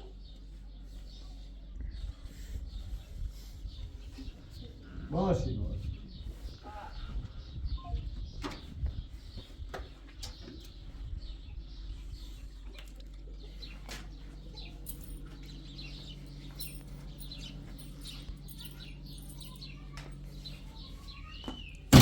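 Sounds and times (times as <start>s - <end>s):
low steady hum: 0.0s - 22.0s
small birds chirping: 0.0s - 22.0s.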